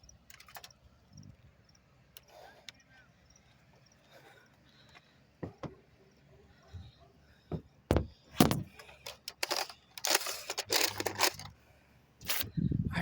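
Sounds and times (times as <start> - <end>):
sharp clicks and knocks: 5.4 - 5.8
dense clattering and rustling: 6.8 - 11.6.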